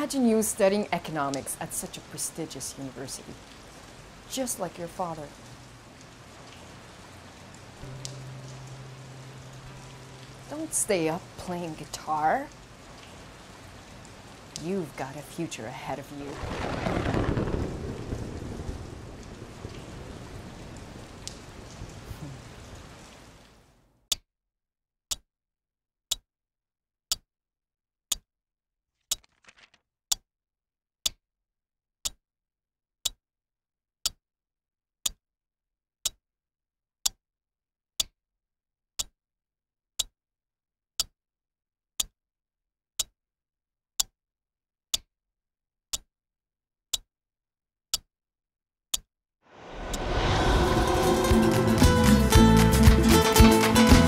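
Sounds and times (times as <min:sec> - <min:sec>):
rain: 0:00.0 - 0:23.8, 0:49.5 - 0:54.0.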